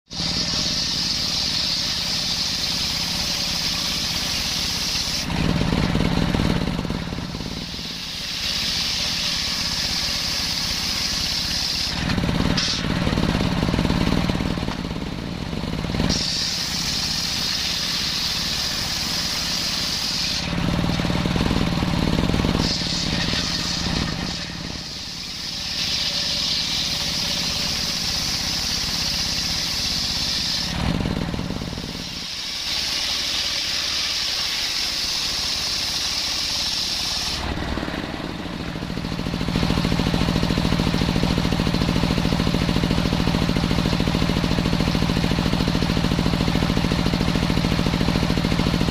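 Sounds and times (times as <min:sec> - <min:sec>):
circular saw cutting wood: 0:00.1 - 0:48.9.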